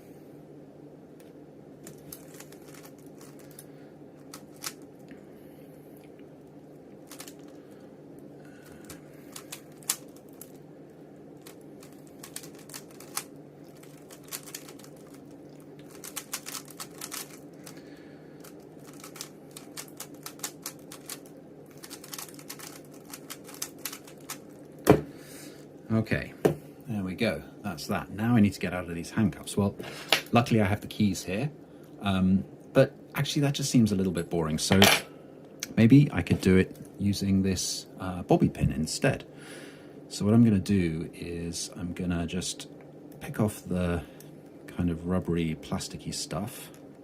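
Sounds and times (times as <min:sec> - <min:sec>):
low hum: 0:00.0 - 0:37.2
puzzle cube plastic clicks: 0:15.9 - 0:17.4.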